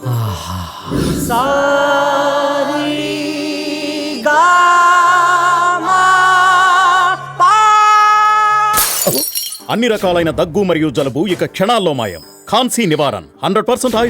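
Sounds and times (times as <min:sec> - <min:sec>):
person singing with vibrato: 0:00.0 - 0:08.9.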